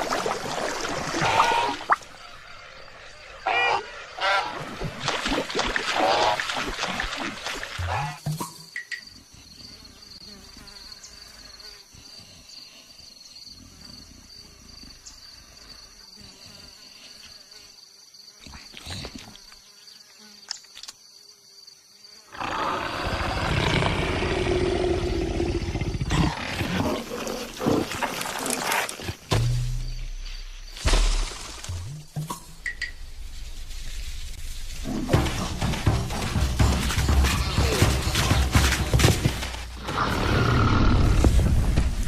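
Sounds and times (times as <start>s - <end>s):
animal calling loudly: 3.4s - 4.6s.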